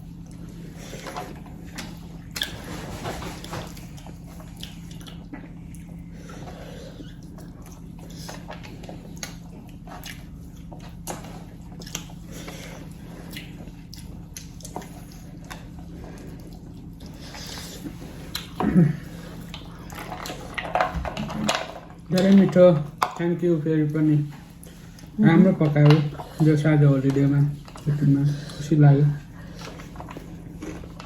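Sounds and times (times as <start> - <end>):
chewing chicken: 0.0 - 31.0
steady low hum: 0.0 - 31.0.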